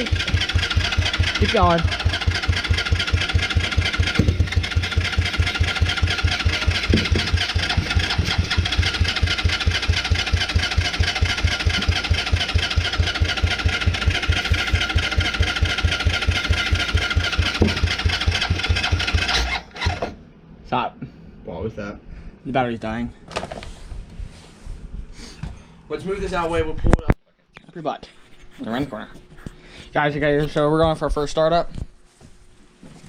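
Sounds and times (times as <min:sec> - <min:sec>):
engine cranking with electric starter: 0:00.0 - 0:20.2.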